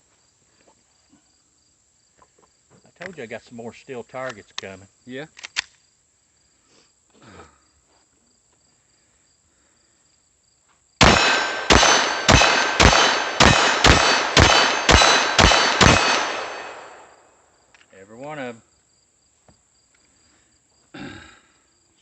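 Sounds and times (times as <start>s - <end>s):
bullets ringing steel target: 11.0s - 17.2s
pistol shots: 11.0s - 17.2s.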